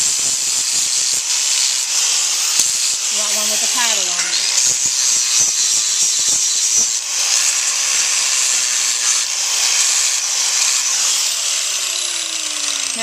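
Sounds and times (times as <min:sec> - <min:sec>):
grinder disc hissing on hoof: 0:00.0 - 0:13.0.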